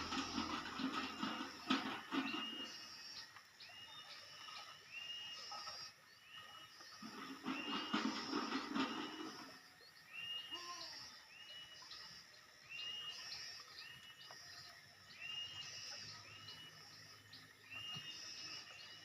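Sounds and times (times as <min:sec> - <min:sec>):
small bird whistling call: 0:10.2 - 0:12.0.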